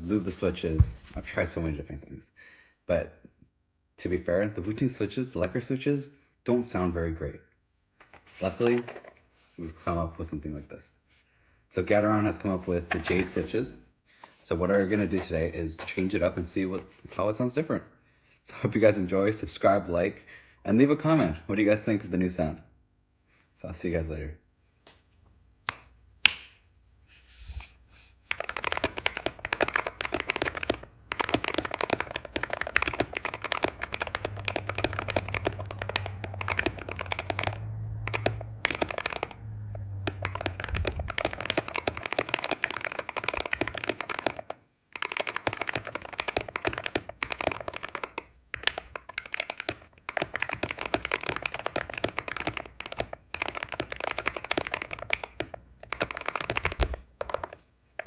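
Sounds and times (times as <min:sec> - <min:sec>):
keyboard typing clacks: 0:28.3 - 0:57.6.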